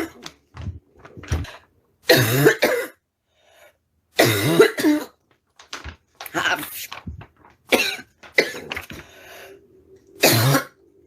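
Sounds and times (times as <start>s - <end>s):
woman barking cough: 2.1s - 3.0s, 4.2s - 5.1s, 7.7s - 8.8s.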